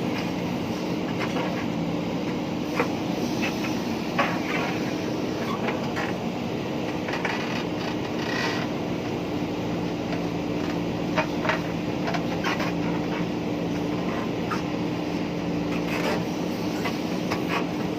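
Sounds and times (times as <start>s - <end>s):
diesel engine running: 0.0s - 17.9s.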